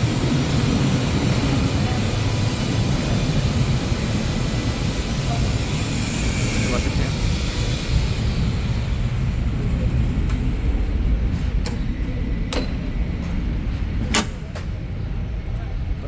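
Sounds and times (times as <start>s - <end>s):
sharp lever clicks: 14.1s - 14.4s.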